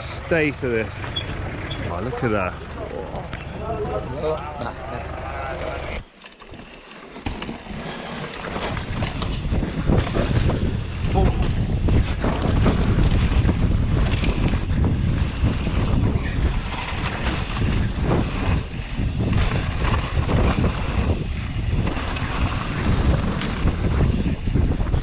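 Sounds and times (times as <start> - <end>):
mountain bike rattling over ground: 0.9 - 25.0
wind buffeting microphone: 8.4 - 25.0.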